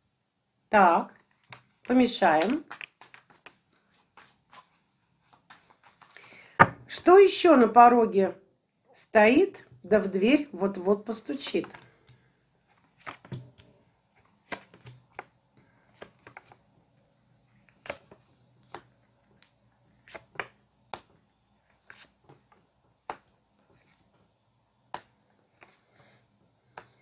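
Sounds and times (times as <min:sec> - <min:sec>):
cards snapping and tapping: 0:02.4 - 0:03.6, 0:14.4 - 0:15.3, 0:17.7 - 0:19.5, 0:24.9 - 0:25.7.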